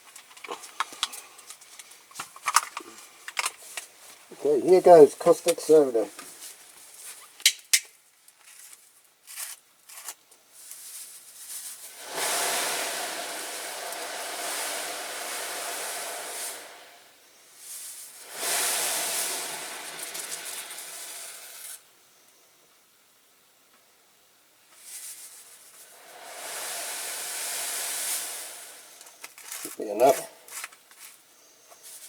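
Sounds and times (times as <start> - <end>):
hissing in boiling water: 10.9 - 21.9, 24.8 - 32.0.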